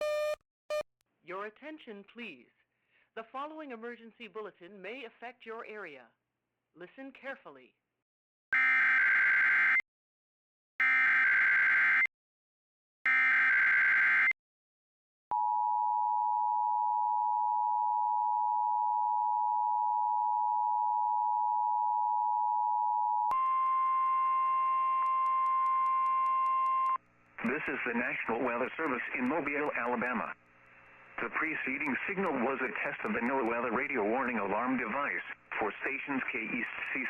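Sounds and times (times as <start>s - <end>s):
harsh buzzy alarm tone: 8.6s - 9.8s, 10.8s - 12.1s, 13.1s - 14.4s
steady alarm tone: 10.8s - 12.1s, 13.1s - 14.3s.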